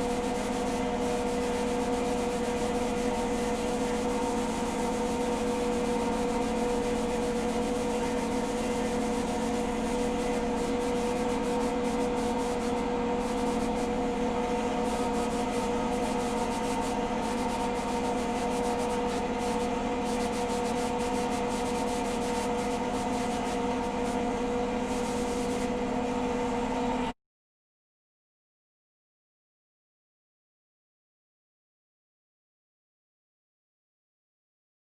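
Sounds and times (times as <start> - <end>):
machine churning and rubbing: 0.0 - 26.7
motor hum: 0.0 - 27.1.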